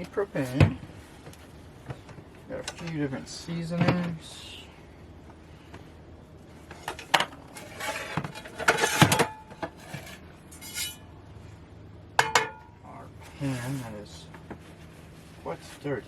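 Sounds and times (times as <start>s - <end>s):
pan and utensils clattering: 6.8s - 11.1s.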